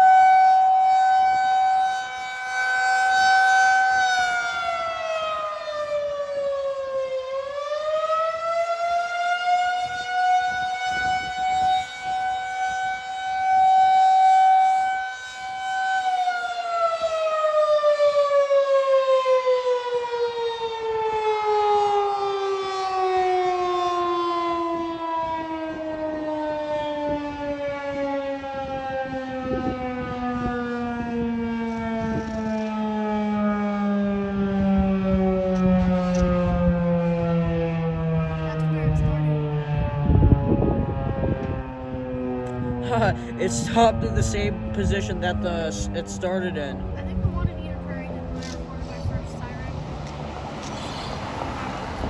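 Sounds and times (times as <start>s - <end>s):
rotating warning siren: 0.0s - 52.0s.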